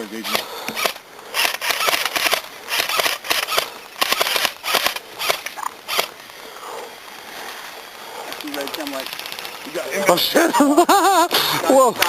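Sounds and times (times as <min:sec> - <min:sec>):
rustling through dry brush: 0:00.0 - 0:12.0.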